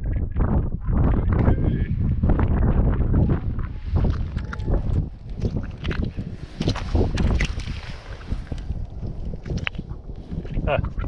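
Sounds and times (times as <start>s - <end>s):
wind buffeting microphone: 0.0s - 11.0s
footsteps squelching in mud: 3.8s - 9.8s.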